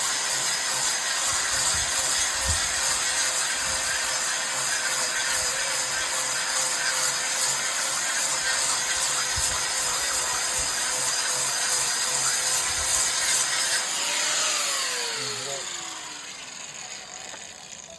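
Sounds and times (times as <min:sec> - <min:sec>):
stone polisher grinding: 0:00.0 - 0:17.9
motor whine: 0:12.6 - 0:17.9.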